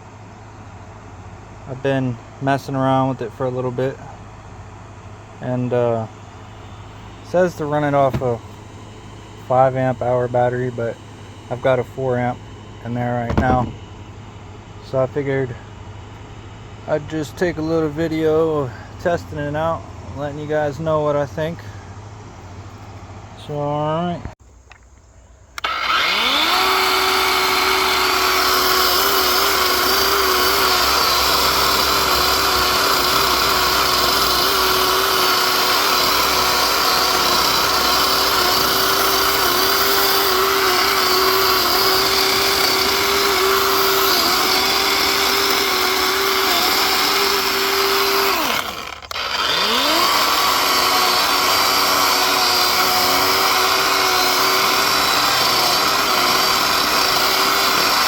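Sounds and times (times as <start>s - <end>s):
electric chainsaw cutting wood: 5.1s - 14.0s, 25.6s - 58.0s.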